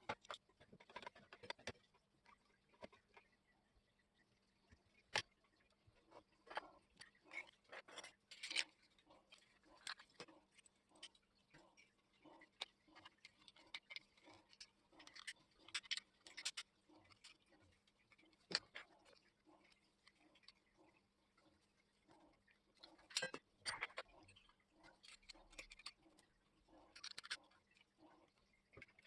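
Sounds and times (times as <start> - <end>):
small clicks and taps: 0.0 - 3.3, 4.6 - 29.0.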